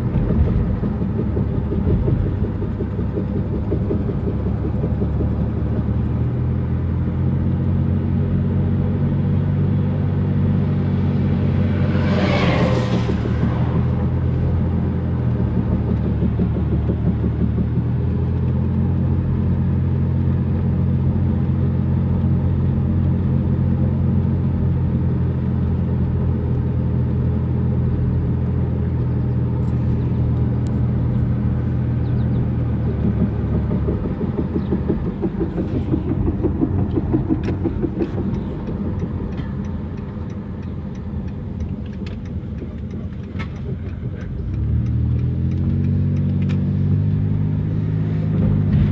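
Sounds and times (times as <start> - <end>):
car engine running: 0.0 - 48.9.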